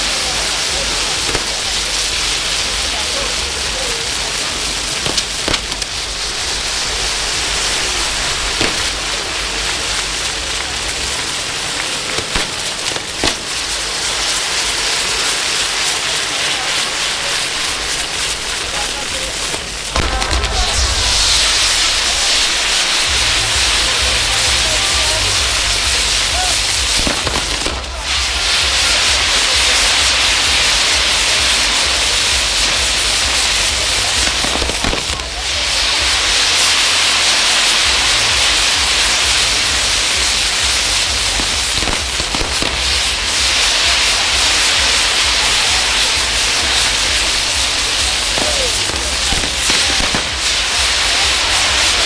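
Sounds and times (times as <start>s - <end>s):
fireworks hissing and crackling: 0.0s - 52.0s.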